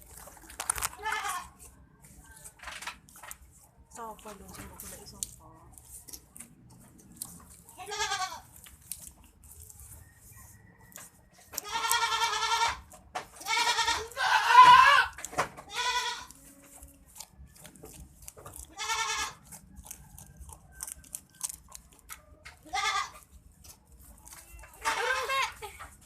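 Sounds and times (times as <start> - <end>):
animal bleating: 0.9 - 1.6, 7.7 - 8.5, 11.6 - 16.8, 18.6 - 19.4, 22.6 - 23.3, 24.8 - 25.7.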